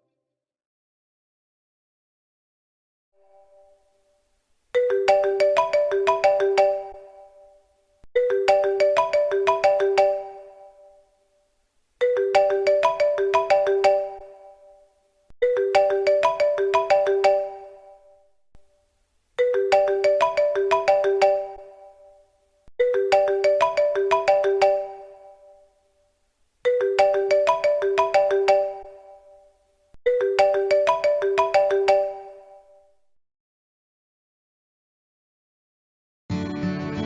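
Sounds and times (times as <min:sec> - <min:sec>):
phone ringtone bell-like melody: 0:04.8 - 0:11.2, 0:12.0 - 0:18.3, 0:19.4 - 0:25.8, 0:26.7 - 0:33.0.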